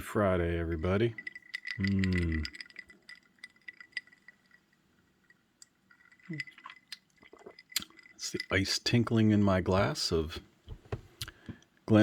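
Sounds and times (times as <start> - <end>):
ice cubes clinking in glass: 0.9 - 9.3.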